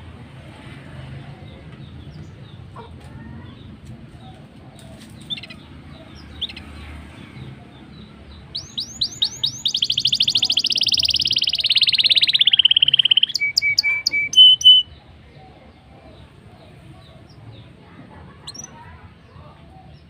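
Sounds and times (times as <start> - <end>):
canary singing: 5.2 - 15.0, 18.4 - 18.8.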